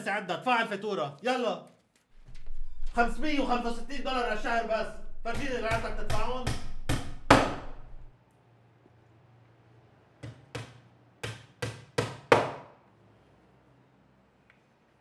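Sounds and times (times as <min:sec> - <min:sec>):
sharp knocks on wood: 0:05.3 - 0:07.8, 0:10.2 - 0:12.7.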